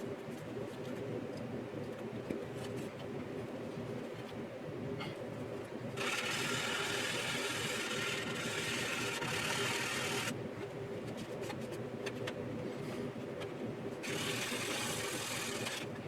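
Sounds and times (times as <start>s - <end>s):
sanding stick scratching plastic: 14.0s - 15.9s.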